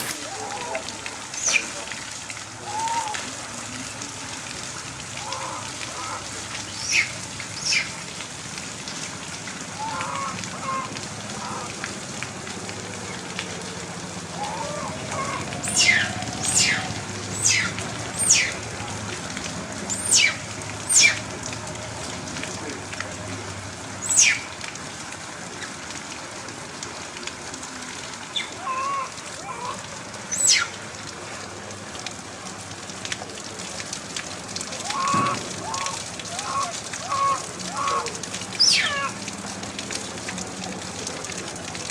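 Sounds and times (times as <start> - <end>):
steady rain falling: 0.0 - 41.9
baby monkey crying out: 14.5 - 18.6, 38.6 - 39.2.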